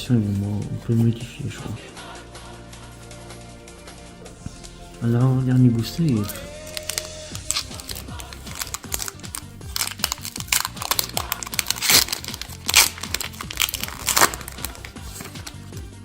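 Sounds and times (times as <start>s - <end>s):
background music: 0.0s - 16.0s
foil wrapper crinkling: 6.1s - 15.7s
foil wrapper tearing open: 6.2s - 15.6s.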